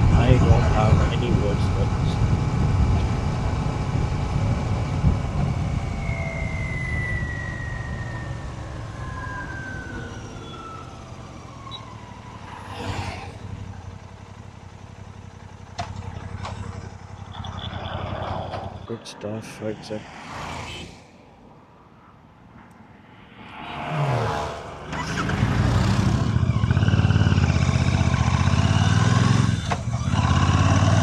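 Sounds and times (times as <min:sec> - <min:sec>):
motorcycle engine and exhaust: 0:00.0 - 0:19.1, 0:22.5 - 0:31.0
brief whoosh: 0:22.5 - 0:26.3.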